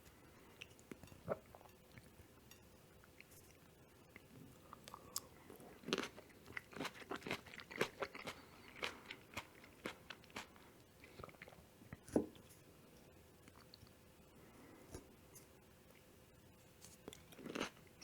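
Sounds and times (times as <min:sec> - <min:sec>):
close-miked chewing and biting: 0:04.7 - 0:11.6.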